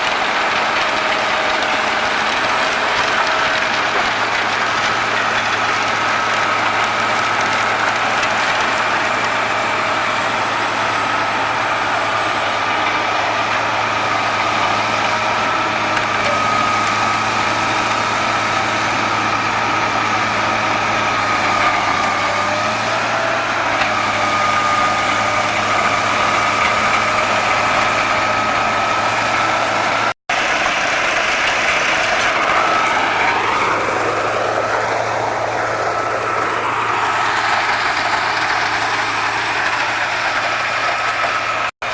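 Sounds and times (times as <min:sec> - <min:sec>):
wood chipper engine drone: 0:00.0 - 0:41.9
high whine: 0:30.3 - 0:40.5.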